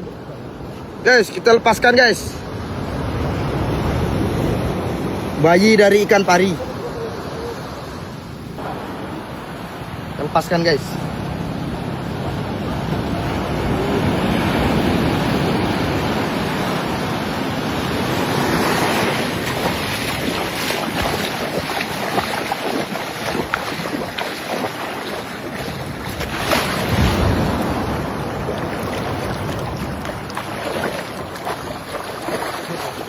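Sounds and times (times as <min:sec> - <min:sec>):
wind buffeting microphone: 0:11.2 - 0:33.0
sea water sloshing: 0:17.6 - 0:33.0
short splashes and knocks: 0:18.2 - 0:33.0.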